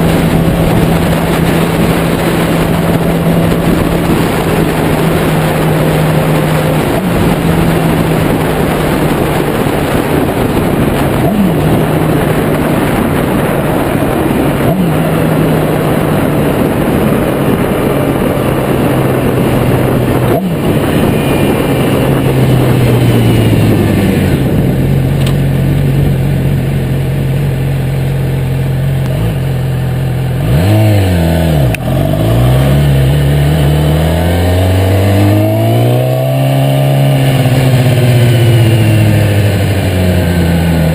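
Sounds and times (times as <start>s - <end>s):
motorcycle engine revving: 0.0s - 40.9s
wind noise on microphone: 0.0s - 40.9s.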